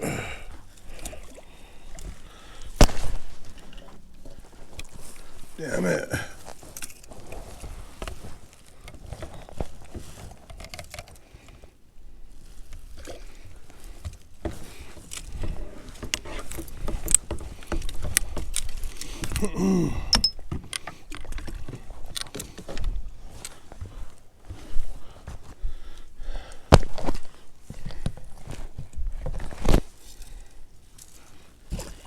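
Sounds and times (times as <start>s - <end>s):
fishing gear clicking and rattling: 0.0s - 24.1s.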